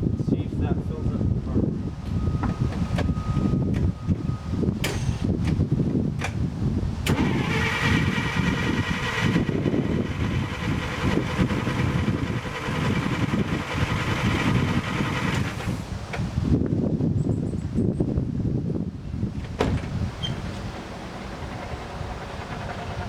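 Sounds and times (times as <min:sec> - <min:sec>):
engine cranking on starter: 0:07.0 - 0:15.9, 0:19.9 - 0:23.0.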